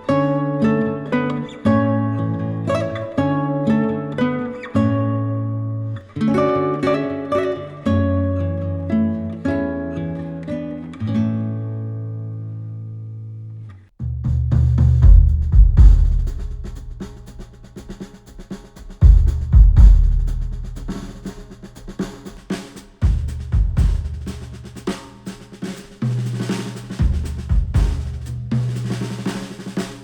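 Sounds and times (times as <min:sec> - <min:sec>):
heavy bass: 0:14.0 - 0:25.2, 0:26.0 - 0:29.8
drum hits and rolls: 0:14.1 - 0:30.0.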